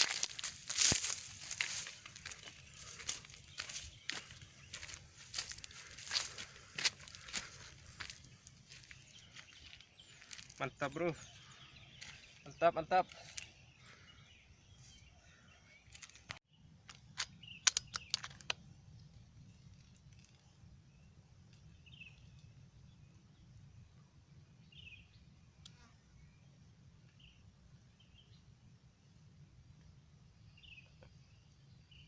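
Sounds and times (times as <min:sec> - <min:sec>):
small birds chirping: 0:00.0 - 0:32.0
sharp clicks and knocks: 0:16.2 - 0:18.6.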